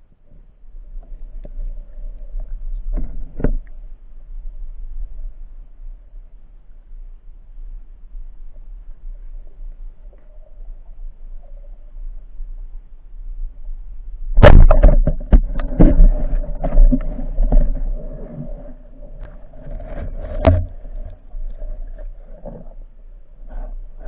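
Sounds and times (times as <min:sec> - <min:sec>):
underwater knocks and rattles: 0:01.0 - 0:03.8, 0:14.4 - 0:22.8.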